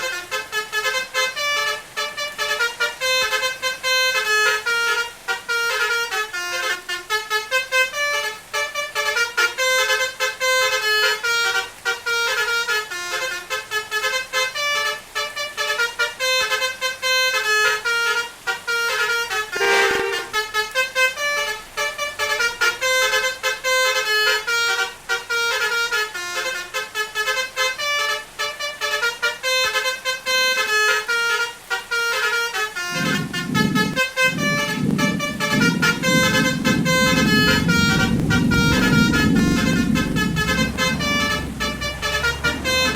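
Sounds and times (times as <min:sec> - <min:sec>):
multi-tone melodic vehicle horn: 0:00.0 - 0:42.9
low rumble: 0:32.9 - 0:42.9.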